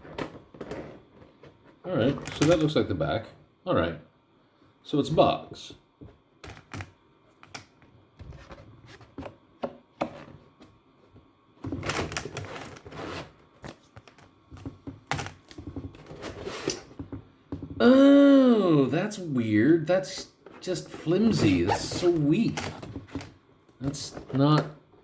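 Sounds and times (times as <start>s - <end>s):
scraping and rustling: 10.0s - 17.2s
plastic panels clicking and rattling: 13.6s - 16.2s.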